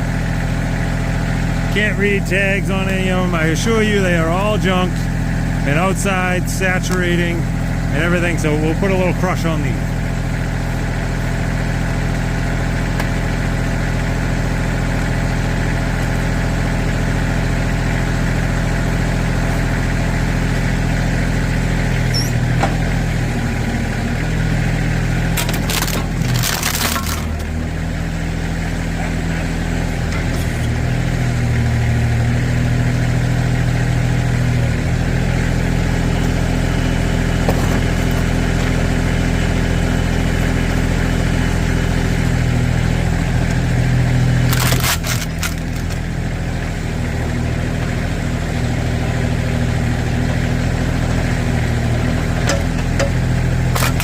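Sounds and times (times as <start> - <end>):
backhoe engine running: 0.0 - 54.0
plastic crunching: 25.4 - 27.4, 44.5 - 46.0, 53.8 - 54.0.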